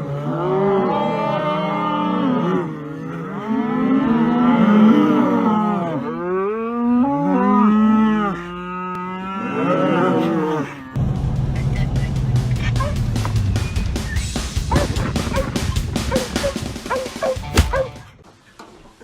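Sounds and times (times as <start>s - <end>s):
cattle mooing: 0.0s - 11.0s.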